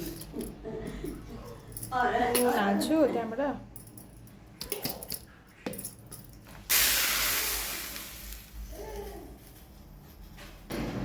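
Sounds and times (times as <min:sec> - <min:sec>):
rushing hiss: 0:06.7 - 0:08.6.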